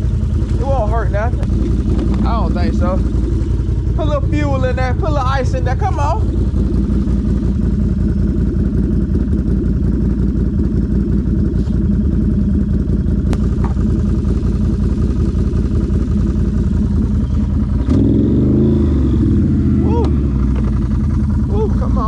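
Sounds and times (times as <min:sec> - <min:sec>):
atv engine running: 0:00.0 - 0:22.0.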